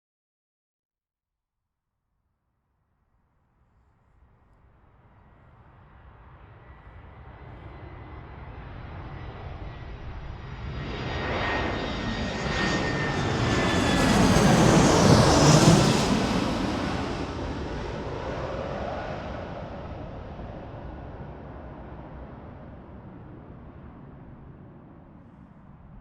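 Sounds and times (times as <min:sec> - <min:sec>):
jet engine whine and roar: 0:05.2 - 0:26.0.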